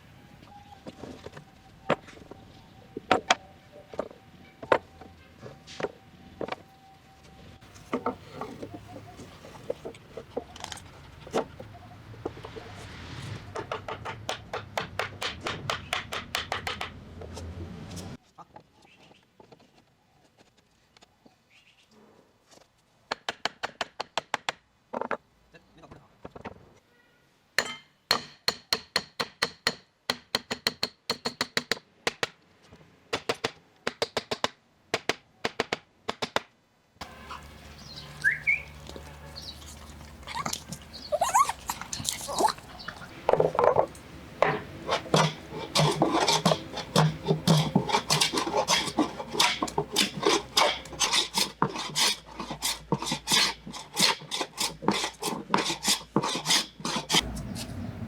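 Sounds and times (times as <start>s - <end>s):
steady background noise: 31.9s - 58.0s
fast scraping strokes: 44.6s - 57.8s.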